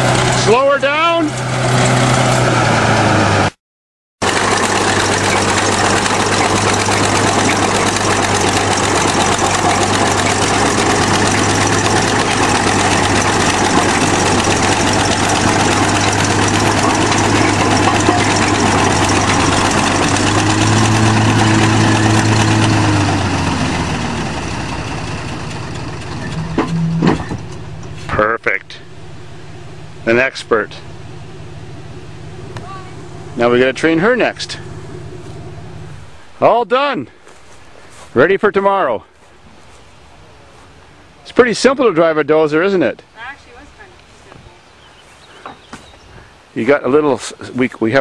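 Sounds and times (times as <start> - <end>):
bulldozer diesel engine running: 0.0 - 3.5, 4.2 - 41.2, 43.2 - 45.9.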